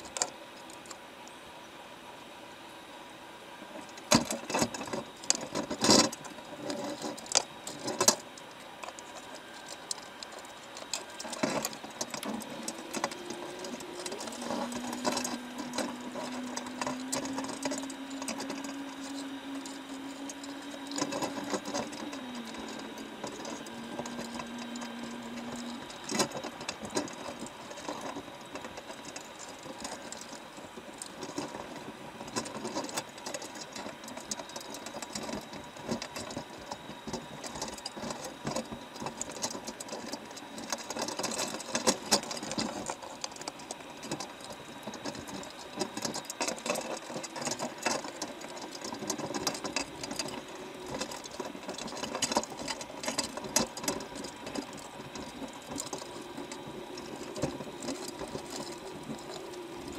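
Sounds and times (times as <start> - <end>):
mechanical rattling with clicks: 3.8 - 59.9
low motor hum: 4.4 - 59.9.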